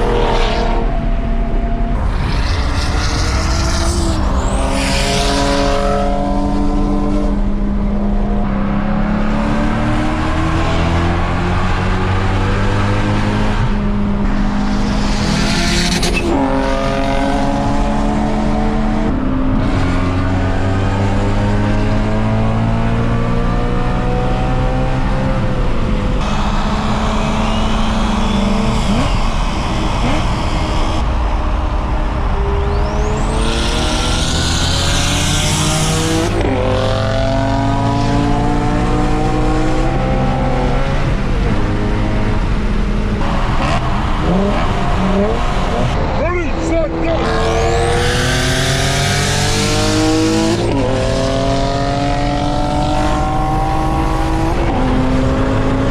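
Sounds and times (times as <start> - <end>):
car engine revving hard: 0.0 - 55.9
turbo whistle: 26.2 - 29.3.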